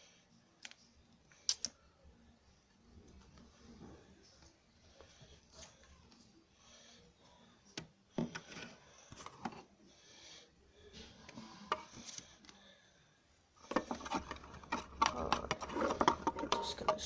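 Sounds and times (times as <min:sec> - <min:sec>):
utensil stirring slime: 0:13.6 - 0:17.0.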